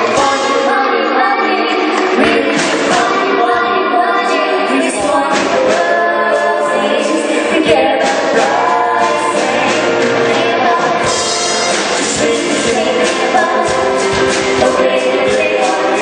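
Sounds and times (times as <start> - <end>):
choir singing in harmony: 0.0 - 16.0.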